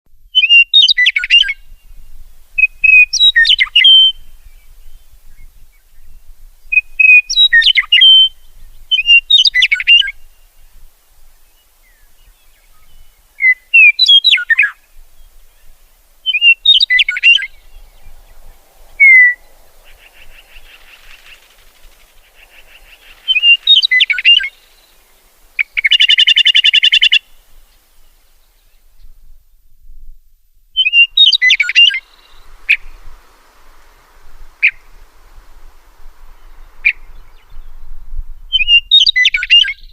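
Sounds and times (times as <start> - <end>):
meadowlark fluty song phrases: 0.1 - 30.0, 30.6 - 39.9
harsh rattle bird call: 16.0 - 27.3
buzzy bird chatter: 19.0 - 24.8.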